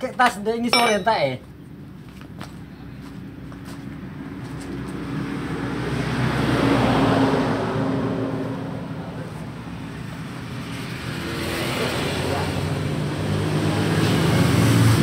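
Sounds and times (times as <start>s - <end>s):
vehicle engine passing by: 4.1s - 15.0s.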